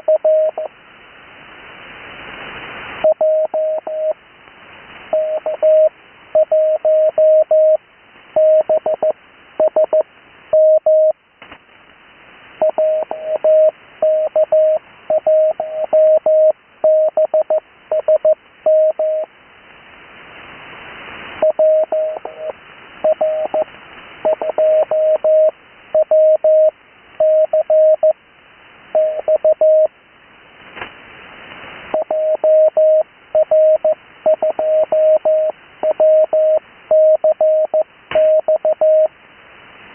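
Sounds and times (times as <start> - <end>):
morse code tone: 12.6 - 19.3, 21.4 - 23.7, 24.3 - 28.1, 29.0 - 29.9, 32.0 - 39.1.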